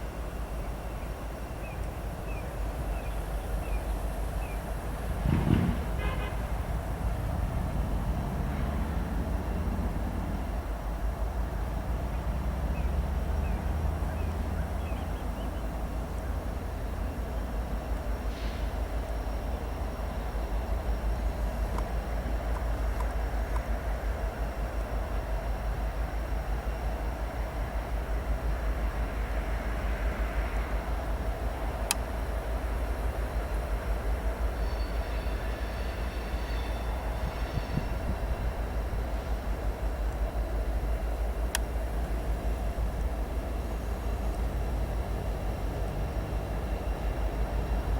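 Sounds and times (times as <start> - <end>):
freight train rolling past: 0.0 - 47.9
high wheel squeal: 34.5 - 38.5.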